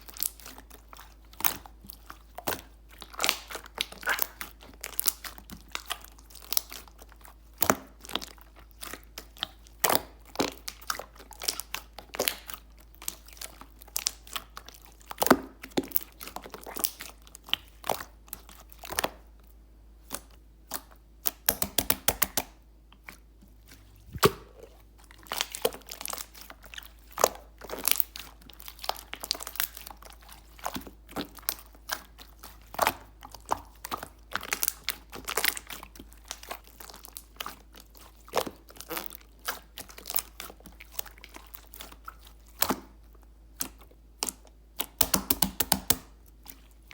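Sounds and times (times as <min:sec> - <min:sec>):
slime squished by hand: 0:00.0 - 0:19.3, 0:20.0 - 0:43.0, 0:43.6 - 0:46.9.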